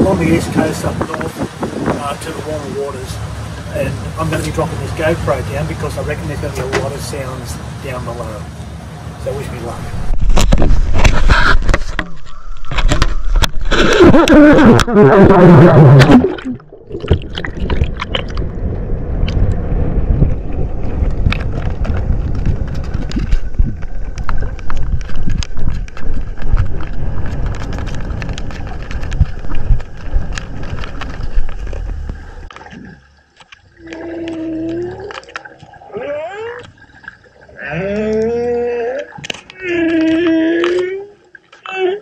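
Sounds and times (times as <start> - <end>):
underwater rushing rumble: 0.0 - 35.9
whale moaning call: 33.8 - 36.7, 37.5 - 42.0.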